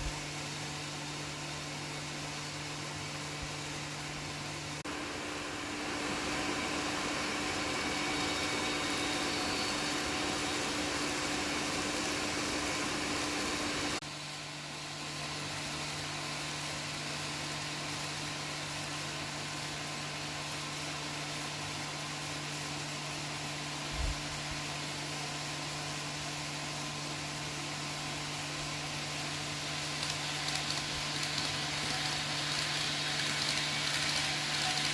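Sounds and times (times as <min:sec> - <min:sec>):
wheel hiss: 0:04.8 - 0:14.0, 0:26.8 - 0:34.9
model train motor hum: 0:04.9 - 0:14.0, 0:26.6 - 0:34.9.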